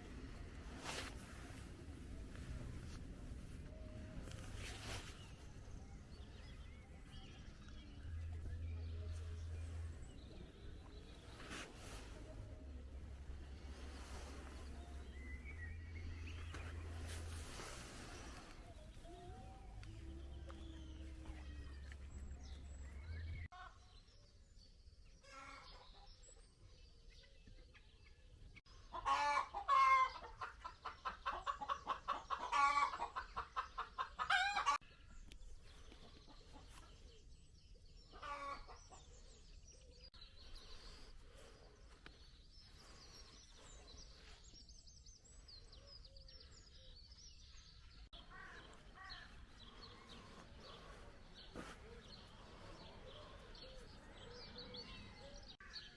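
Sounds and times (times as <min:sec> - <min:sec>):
chickens clucking and cackling: 0:28.7 - 0:34.9, 0:38.0 - 0:39.3, 0:48.1 - 0:55.6.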